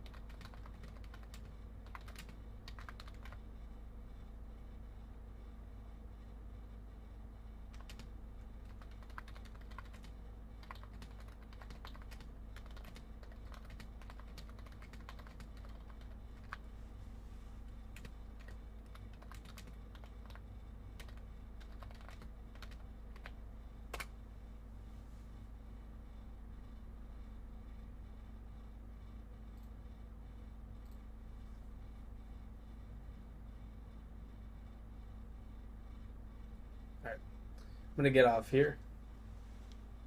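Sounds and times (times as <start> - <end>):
keyboard typing clicks: 0.0 - 3.4, 7.7 - 16.6, 18.0 - 20.4, 21.0 - 24.1
low electrical hum: 0.0 - 40.0.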